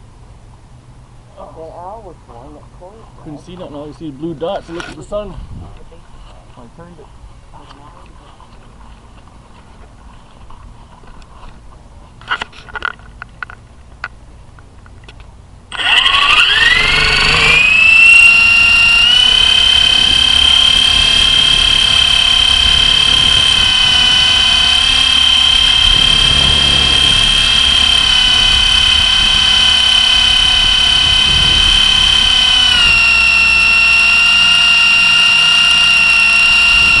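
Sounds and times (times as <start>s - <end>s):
model helicopter motor whine: 15.7s - 37.0s.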